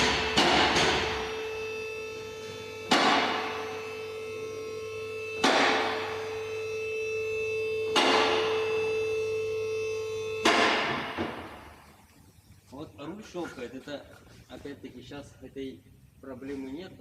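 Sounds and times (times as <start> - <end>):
sharp ringing knocks: 0.0 - 1.6, 2.9 - 3.7, 5.4 - 6.3, 7.9 - 8.8, 10.4 - 11.7
steady hum: 0.0 - 17.0.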